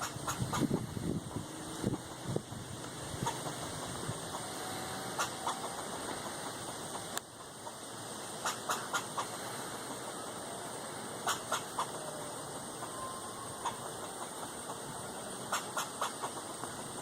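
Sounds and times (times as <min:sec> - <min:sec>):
squirrel barking: 0:00.0 - 0:02.4, 0:03.1 - 0:07.7, 0:08.4 - 0:09.4, 0:11.2 - 0:16.5
background hiss: 0:00.0 - 0:17.0.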